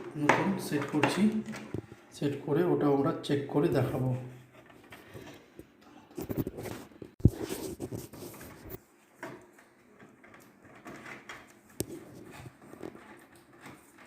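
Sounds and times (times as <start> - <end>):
plastic parts clattering: 0.0 - 2.0.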